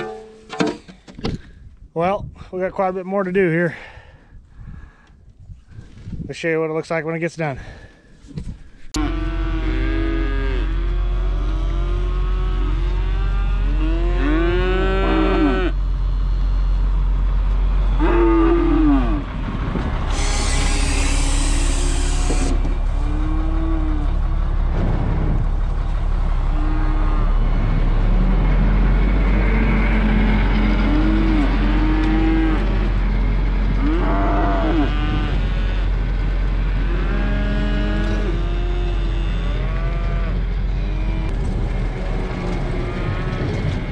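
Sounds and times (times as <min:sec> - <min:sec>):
tractor engine droning: 0:08.9 - 0:43.9
cattle mooing: 0:09.0 - 0:15.8, 0:17.9 - 0:19.3, 0:20.1 - 0:24.3, 0:26.4 - 0:28.4, 0:29.1 - 0:33.1, 0:33.7 - 0:41.3.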